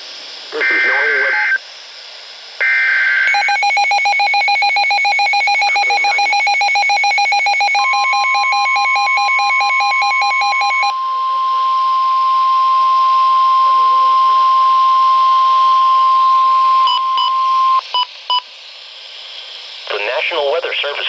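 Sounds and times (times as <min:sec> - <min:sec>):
two-tone data burst: 0:00.5 - 0:01.6, 0:02.6 - 0:18.5
steady warning alarm tone: 0:00.6 - 0:01.6, 0:02.6 - 0:18.4
warbling receiver alarm beeps: 0:00.6 - 0:01.6, 0:02.6 - 0:18.4.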